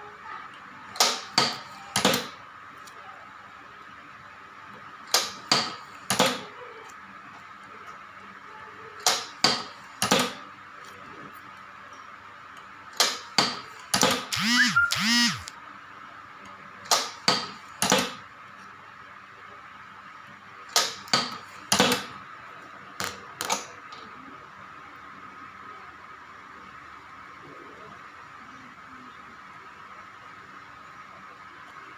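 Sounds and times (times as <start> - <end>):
machine hum: 14.3 - 15.6.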